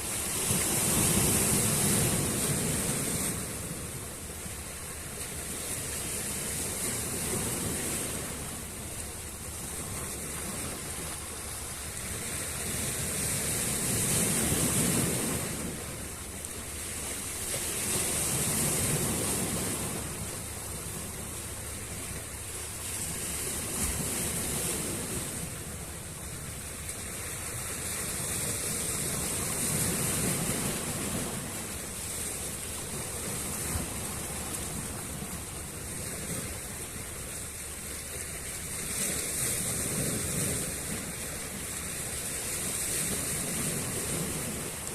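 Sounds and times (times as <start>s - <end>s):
sea waves washing onto shore: 0.0s - 44.9s.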